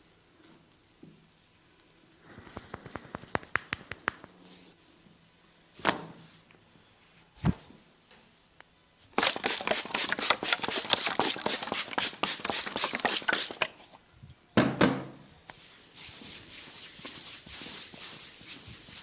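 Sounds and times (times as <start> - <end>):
soft steady rustle: 0.0 - 3.6, 15.5 - 19.0
fingers scratching and tapping hair: 2.5 - 4.3, 9.1 - 13.9.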